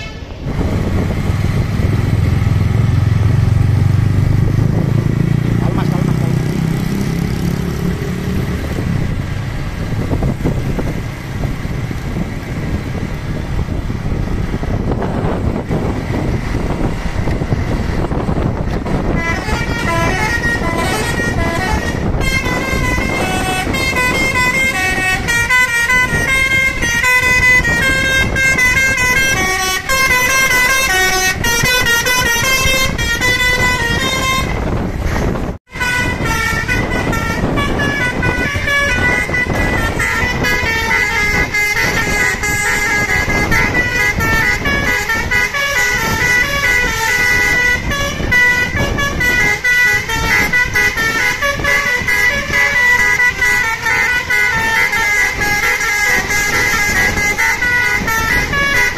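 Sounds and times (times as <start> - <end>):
musical bus air horn: 0.0 - 0.5, 18.0 - 58.9
road traffic: 0.0 - 58.9.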